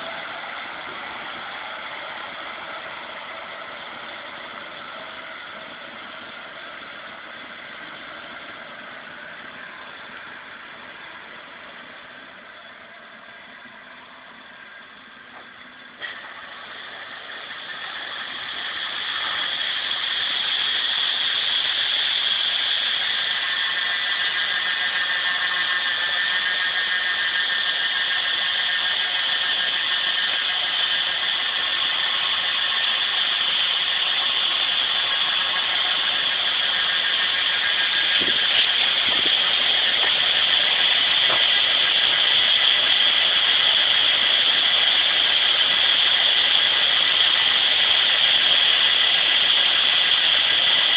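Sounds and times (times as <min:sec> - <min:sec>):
harvest machinery droning: 0:00.0 - 0:50.9
thin whine: 0:00.0 - 0:50.9.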